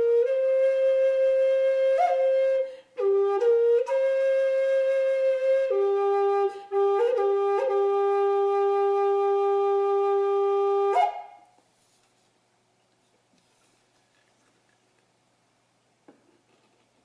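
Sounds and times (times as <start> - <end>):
solo woodwind melody: 0.0 - 11.6.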